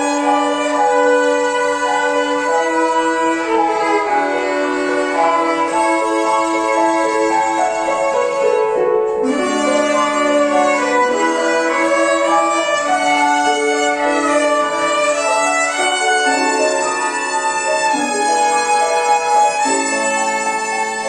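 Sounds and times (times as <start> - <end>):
violins playing a melody: 0.0 - 21.0.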